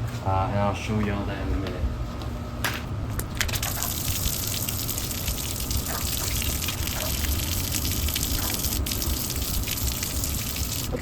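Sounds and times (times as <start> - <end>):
water gushing from spray gun: 3.4 - 11.0.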